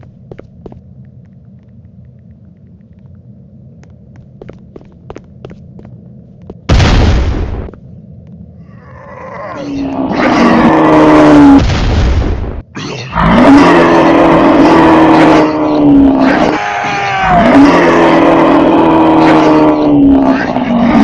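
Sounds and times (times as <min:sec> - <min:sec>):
sudden loud boom: 0:06.7 - 0:07.7.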